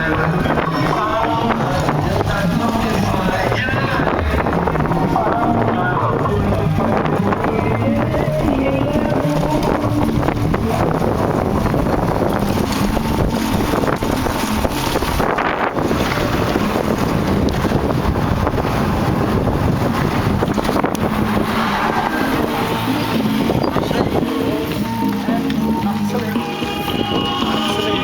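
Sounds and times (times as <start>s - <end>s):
dirt bike rumbling and rattling: 0.0s - 28.0s
wind buffeting microphone: 0.0s - 28.0s.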